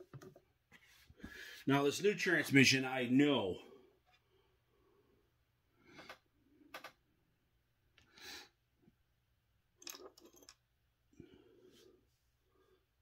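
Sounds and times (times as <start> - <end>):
small parts clicking and knocking: 9.8 - 10.7.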